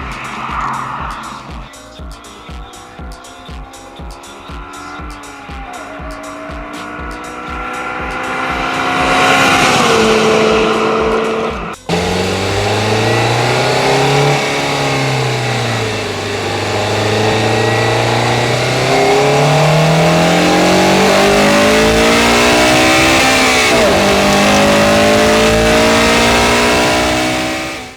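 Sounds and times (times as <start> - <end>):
car engine revving: 0.0 - 27.9.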